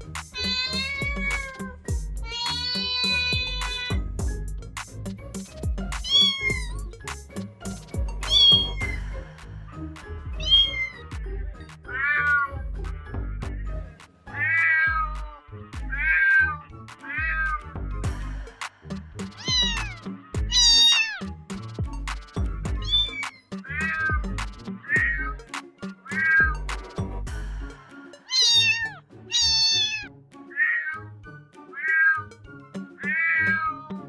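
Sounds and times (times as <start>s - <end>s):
background music with beat: 0.0s - 30.5s
kitten meowing: 0.4s - 1.6s, 2.2s - 4.0s, 6.0s - 6.8s, 8.3s - 9.0s, 10.4s - 11.0s, 14.4s - 17.7s, 19.4s - 21.2s, 22.8s - 24.2s, 24.9s - 25.3s, 26.1s - 26.6s, 28.3s - 31.0s, 31.8s - 32.2s, 33.0s - 33.8s.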